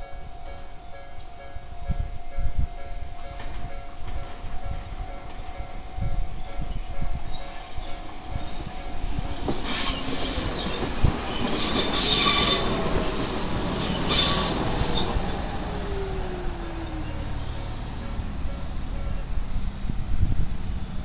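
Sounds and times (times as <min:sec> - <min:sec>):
rail rumble: 0:00.0 - 0:21.0
train wheels squealing: 0:06.4 - 0:21.0
low tone sliding down: 0:14.3 - 0:21.0.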